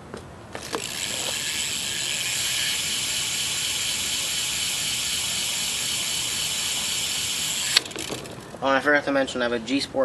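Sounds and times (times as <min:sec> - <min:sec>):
bicycle hub freewheeling buzz: 0:00.6 - 0:08.6.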